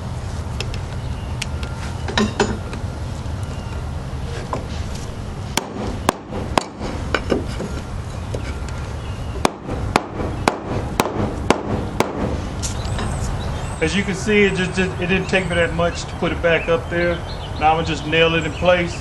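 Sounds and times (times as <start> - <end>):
steady low rumble: 0.0 - 17.8
hammer blows on wood: 5.6 - 7.8, 9.4 - 13.2.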